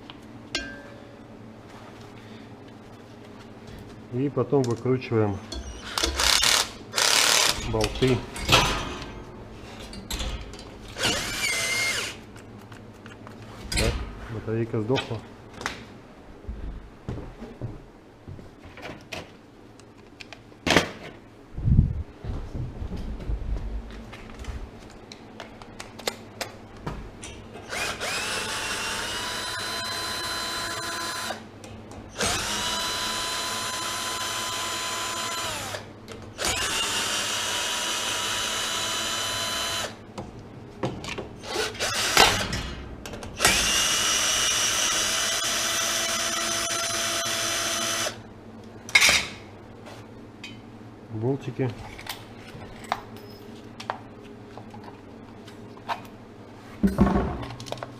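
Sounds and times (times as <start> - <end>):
cordless drill whining: 11.0 - 12.2, 27.7 - 31.4, 32.2 - 35.8, 36.4 - 40.0, 41.5 - 42.2, 43.4 - 48.2.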